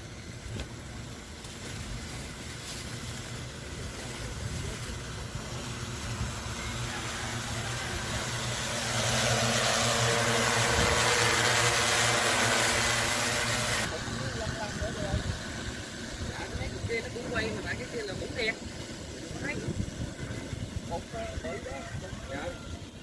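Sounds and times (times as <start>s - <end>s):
drone propellers humming: 0.0s - 23.0s.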